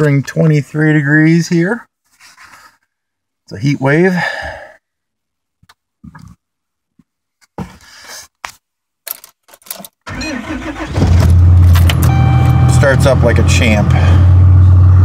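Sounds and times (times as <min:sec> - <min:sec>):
starter cranking diesel engine: 0:10.1 - 0:15.0.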